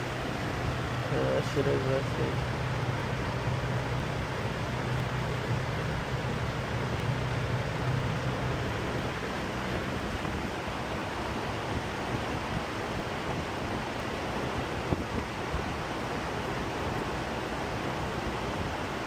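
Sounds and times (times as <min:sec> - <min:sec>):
low engine drone: 0:00.0 - 0:19.0
road and wind rush: 0:00.0 - 0:19.0.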